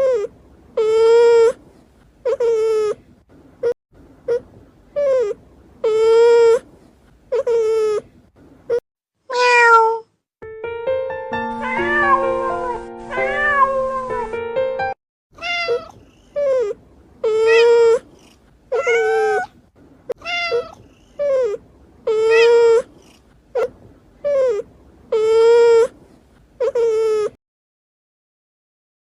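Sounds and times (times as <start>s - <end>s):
cat meowing: 9.3s - 10.1s, 11.6s - 14.3s, 15.4s - 25.9s, 26.6s - 27.4s
music with held notes: 10.4s - 15.0s.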